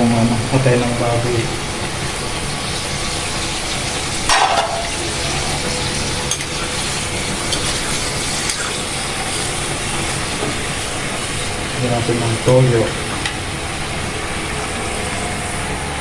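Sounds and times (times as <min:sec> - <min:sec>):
meat sizzling in oil: 0:00.4 - 0:15.6.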